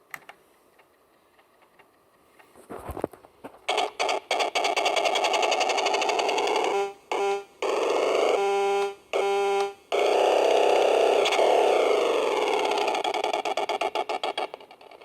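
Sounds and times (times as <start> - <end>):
buzzy horn-like electronic tones: 3.7 - 14.4
wavering synthesized stuttering sound: 3.7 - 15.0.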